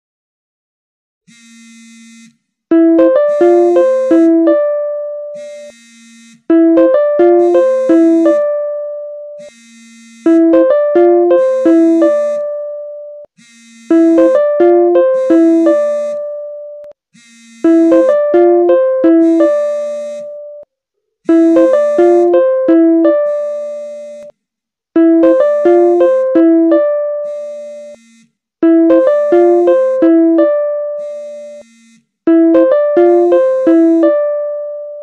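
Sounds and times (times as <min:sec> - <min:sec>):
chiming ringtone melody: 0:02.7 - 0:05.8, 0:06.5 - 0:09.6, 0:10.2 - 0:13.3, 0:13.9 - 0:16.9, 0:17.6 - 0:20.6, 0:21.3 - 0:24.3, 0:25.0 - 0:28.0, 0:28.6 - 0:31.7, 0:32.3 - 0:35.0.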